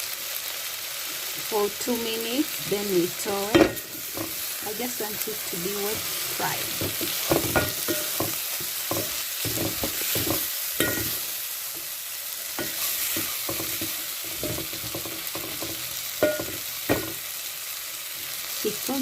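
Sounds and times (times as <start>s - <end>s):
food sizzling in a pan: 0.0s - 19.0s
utensil scraping a pan: 5.8s - 11.9s, 12.6s - 17.2s.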